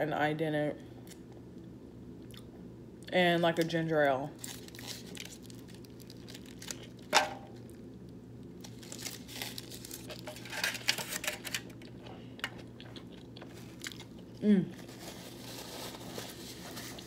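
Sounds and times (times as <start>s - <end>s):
food packaging crinkling: 4.4s - 7.8s, 8.5s - 17.0s.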